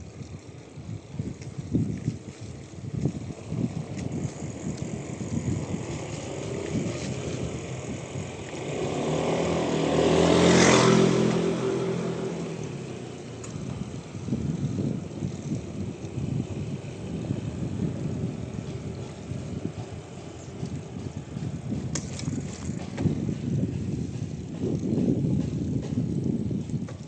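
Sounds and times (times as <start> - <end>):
wind buffeting microphone: 0.0 - 27.0
vehicle passing by: 4.5 - 15.4.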